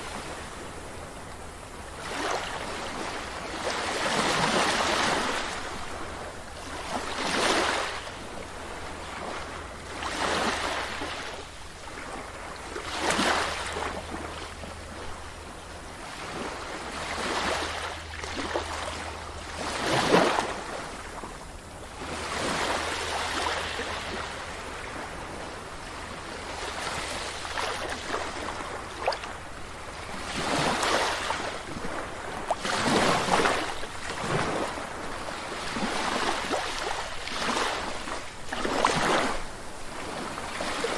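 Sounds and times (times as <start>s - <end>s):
sea waves breaking on beach: 0.0s - 40.9s.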